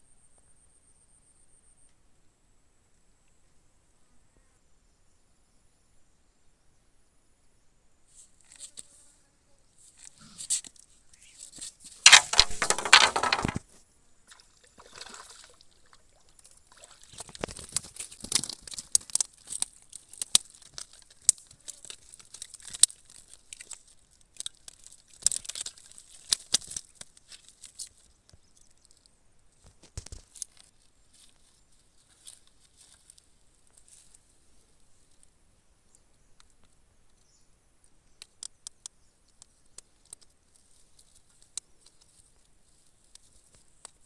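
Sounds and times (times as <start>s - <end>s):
rustling and crunching handling: 9.8s - 13.7s, 16.4s - 29.0s, 29.6s - 34.3s.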